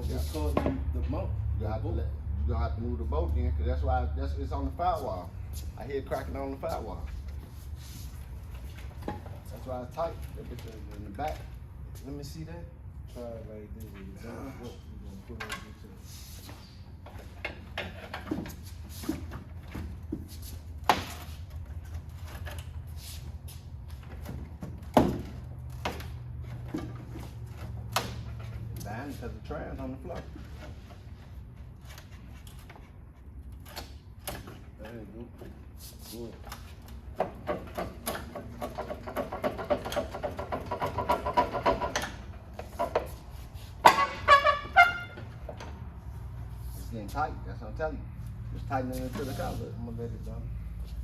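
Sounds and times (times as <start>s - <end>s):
high metal squeals: 43.8s - 45.5s.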